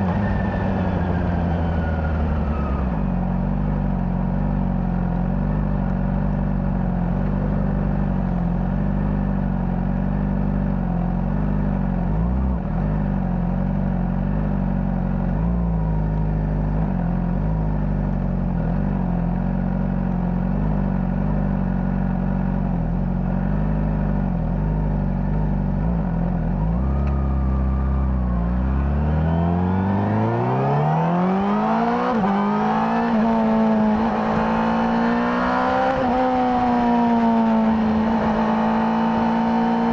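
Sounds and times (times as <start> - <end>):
motorcycle engine revving: 23.8 - 39.9.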